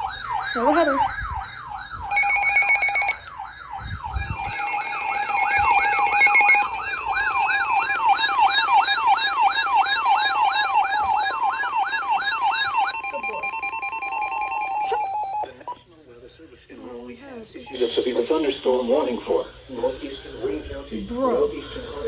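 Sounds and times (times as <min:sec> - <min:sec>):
sweeping siren-like alert tone: 0:00.0 - 0:15.6
steady attention tone: 0:00.0 - 0:15.7.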